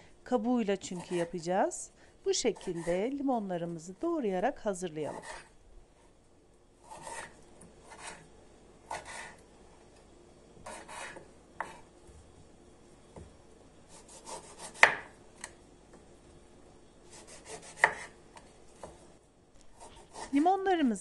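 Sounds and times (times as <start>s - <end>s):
knife slicing through lemon peel: 17.1s - 18.2s.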